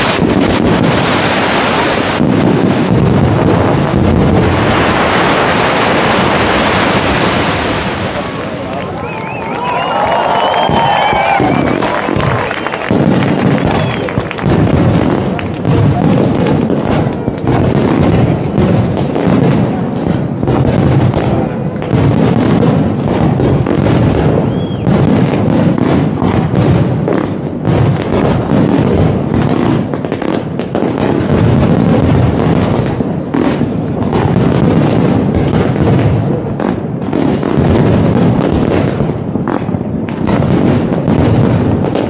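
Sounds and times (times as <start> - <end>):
fireworks bangs and booms: 0.0 - 42.0
firework whistle: 4.3 - 17.7, 23.8 - 26.0.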